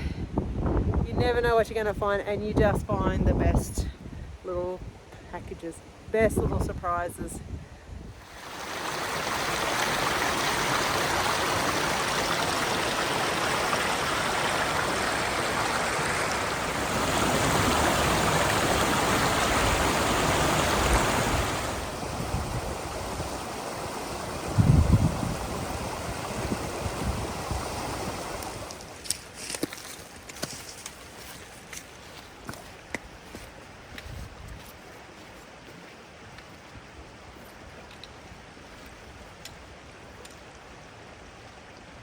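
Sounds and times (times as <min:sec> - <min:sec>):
water rushing over rocks: 0:08.2 - 0:29.2.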